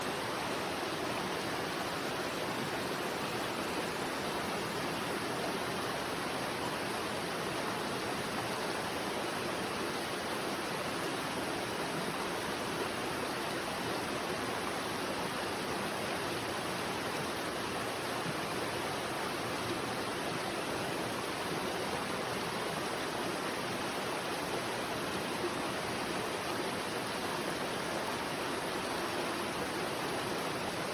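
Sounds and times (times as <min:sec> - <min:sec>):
river water flowing: 0:00.0 - 0:30.9.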